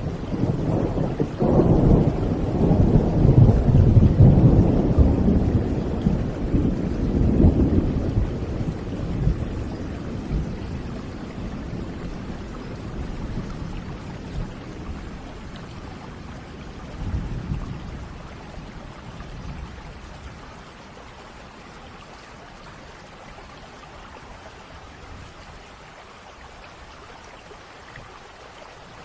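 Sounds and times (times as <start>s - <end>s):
thunder rumbling: 0.0s - 20.4s
rain falling: 0.0s - 29.0s.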